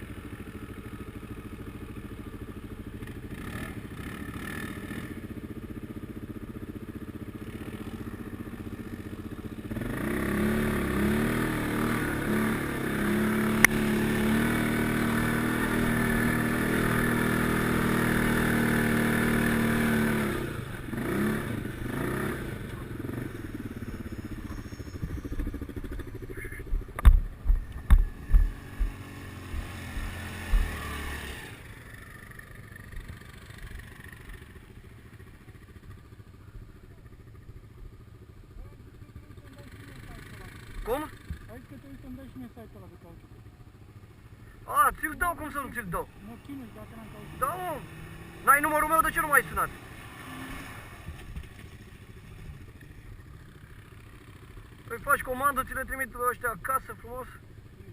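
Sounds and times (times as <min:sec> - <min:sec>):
atv engine revving: 0:00.0 - 0:57.9
loud low thumps: 0:25.9 - 0:30.8.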